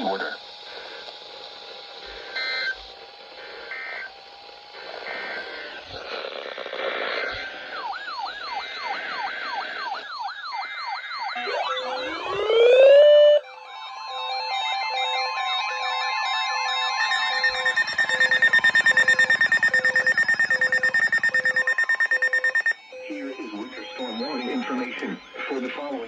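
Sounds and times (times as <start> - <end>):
fast warbling siren tone: 7.8 - 25.2
steady and pulsing alert tones: 11.1 - 26.0.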